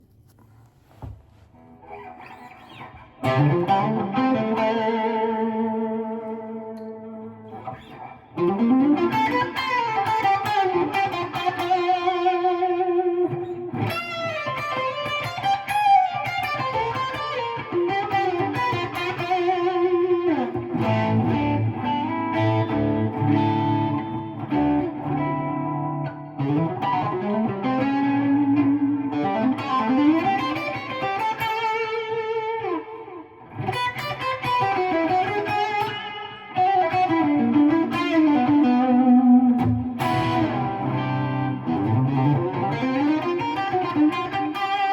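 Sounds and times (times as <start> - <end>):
electric guitar lead lines: 1.6 - 44.9
electric guitar chord ringing: 34.6 - 44.9.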